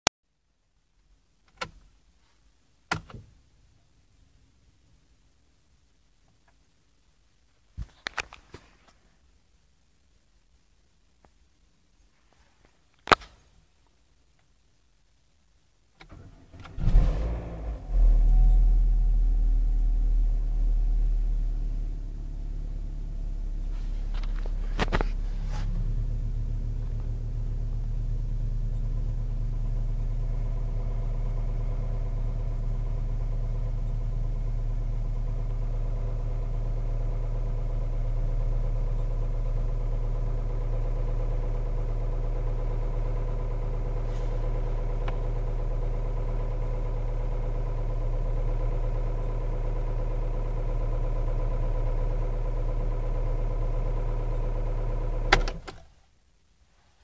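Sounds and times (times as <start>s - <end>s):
car engine idling: 16.2s - 55.9s.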